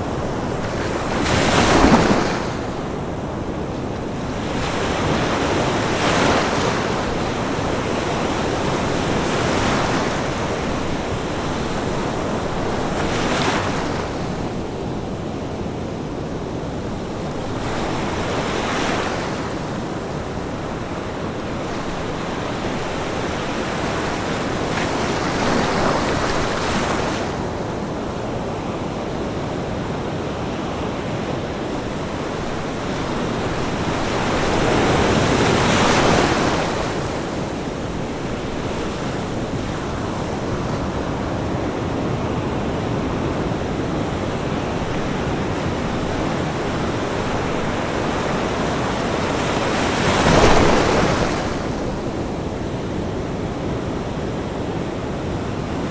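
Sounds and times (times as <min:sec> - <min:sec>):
ocean waves breaking: 0:00.0 - 0:55.9.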